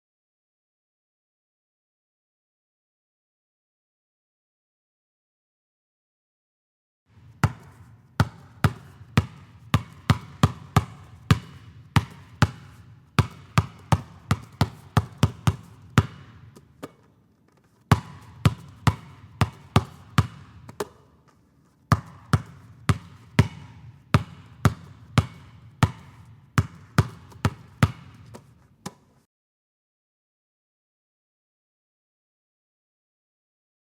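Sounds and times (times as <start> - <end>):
basketball bouncing on gym floor: 7.1 - 17.2, 17.9 - 21.2, 21.9 - 29.2.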